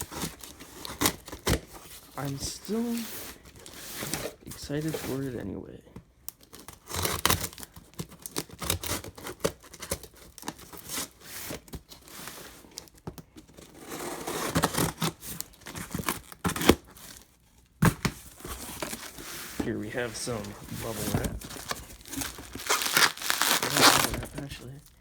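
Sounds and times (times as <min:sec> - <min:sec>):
cardboard box ripping: 0:00.0 - 0:05.2, 0:06.4 - 0:12.9, 0:13.5 - 0:24.8
packing material crinkling: 0:18.3 - 0:25.0.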